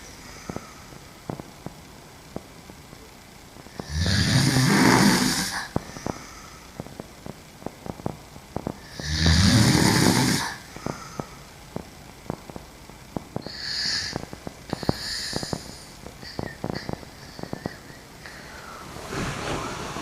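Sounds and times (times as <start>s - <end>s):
woman snoring: 3.7s - 6.8s, 8.8s - 11.4s, 13.4s - 18.9s.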